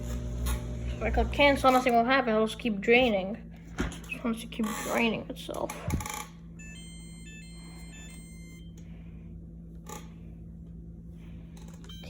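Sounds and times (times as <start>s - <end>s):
dishwasher drain pump humming: 0.0s - 12.0s
electronic chime: 6.6s - 8.7s.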